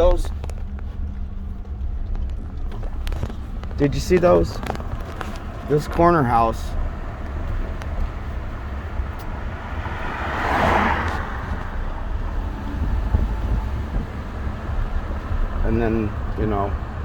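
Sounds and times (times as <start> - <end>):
low traffic rumble: 0.0 - 17.0
car passing by: 5.2 - 17.0.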